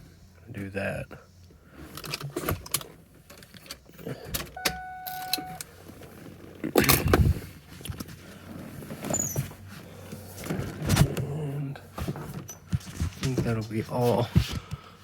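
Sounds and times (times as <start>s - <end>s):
electronic beep: 4.6s - 5.6s.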